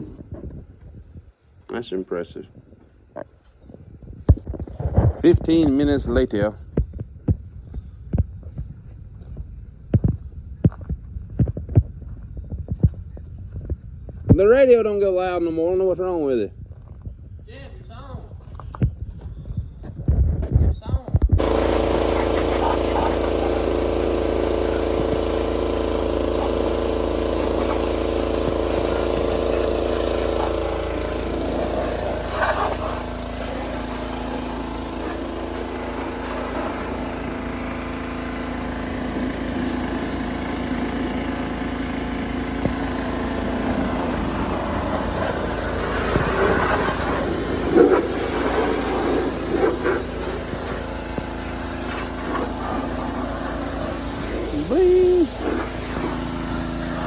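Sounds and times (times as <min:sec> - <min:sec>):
engine running: 0:21.2 - 0:57.0.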